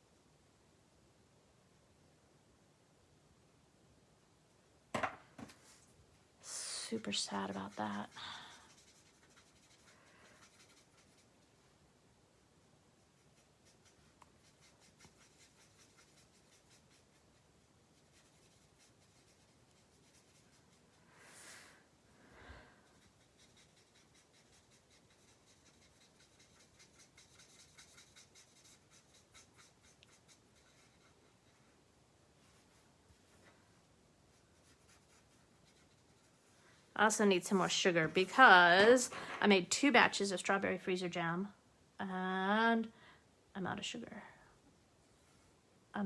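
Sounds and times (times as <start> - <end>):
marker scratching on paper: 6.9 - 11.3, 13.2 - 21.0, 22.9 - 31.7, 34.3 - 36.5.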